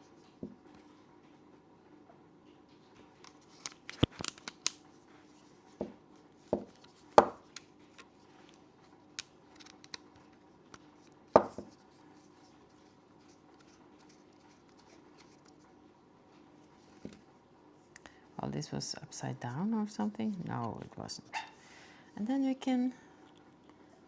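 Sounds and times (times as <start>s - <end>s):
plastic parts clicking and knocking: 3.2s - 4.8s, 9.2s - 10.8s.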